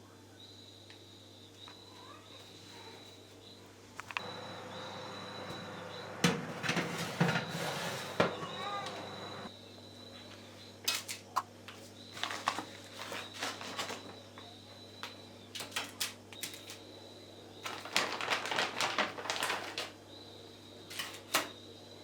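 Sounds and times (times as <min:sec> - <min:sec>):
faint high steady tone: 0:04.2 - 0:10.7.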